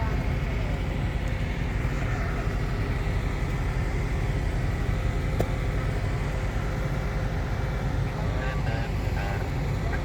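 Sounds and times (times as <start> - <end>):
heavy machinery rumbling: 0.0 - 10.0.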